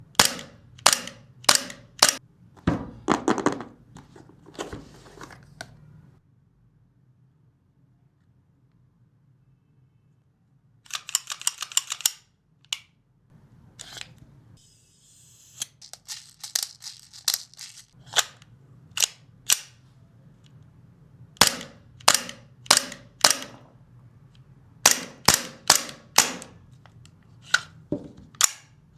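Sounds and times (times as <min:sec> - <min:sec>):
airsoft pistol shots: 0:00.2 - 0:02.2, 0:21.4 - 0:23.6, 0:24.8 - 0:26.6.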